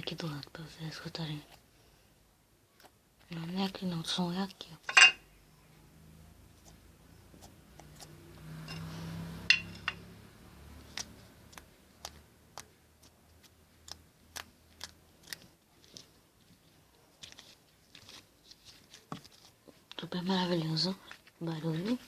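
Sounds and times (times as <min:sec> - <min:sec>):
slime squishing: 0:10.8 - 0:20.1
slime clicking and popping: 0:10.9 - 0:16.0.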